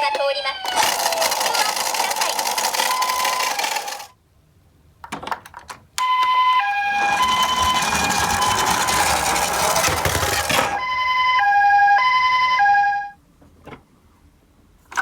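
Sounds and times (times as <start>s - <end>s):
rattling rolling noise: 0.6s - 4.1s, 6.5s - 10.8s
ambulance siren: 6.0s - 13.2s.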